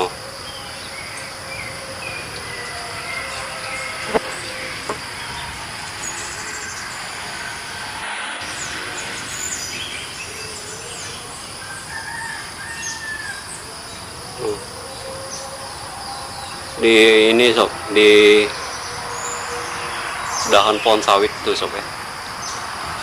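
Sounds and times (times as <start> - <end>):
small birds chirping: 0.0 - 7.5, 8.4 - 23.0
insects droning: 0.0 - 23.0.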